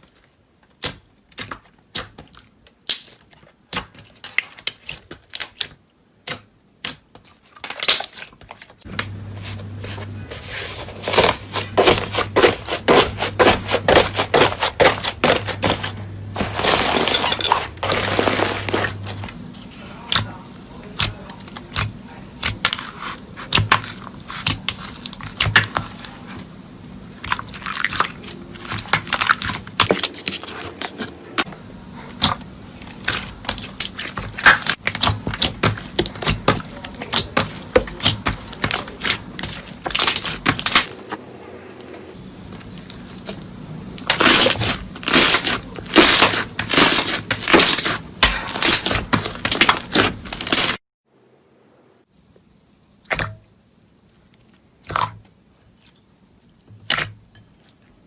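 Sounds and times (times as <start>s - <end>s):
slime crackling and popping: 0.7s - 8.4s.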